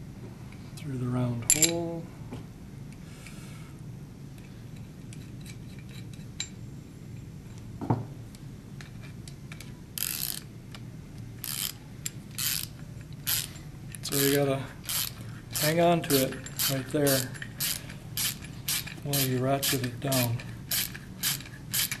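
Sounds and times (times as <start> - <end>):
socket ratchet clicking: 10.0 - 10.5, 11.4 - 22.0.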